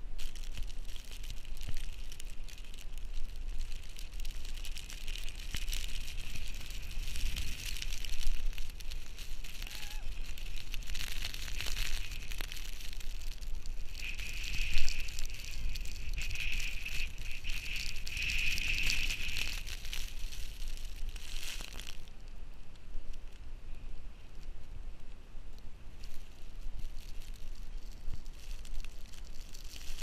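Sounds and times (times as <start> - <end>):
wind blowing across microphone: 0.0 - 22.0.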